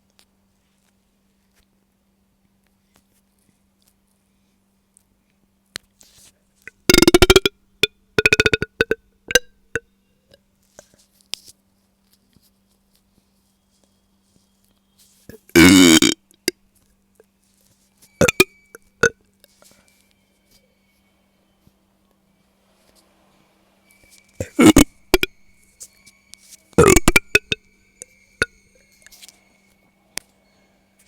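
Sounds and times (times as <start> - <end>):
woman burping: 6.9 - 7.5, 15.3 - 16.2, 18.2 - 18.4, 24.4 - 25.3, 26.8 - 27.6.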